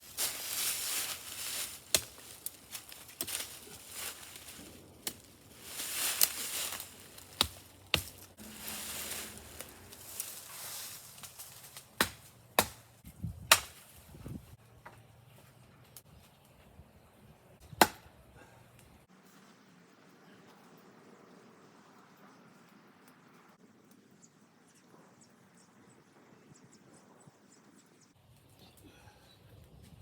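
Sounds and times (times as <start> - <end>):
rustling: 0.0 - 12.3
hatchet striking wood: 12.0 - 12.8, 17.8 - 18.1.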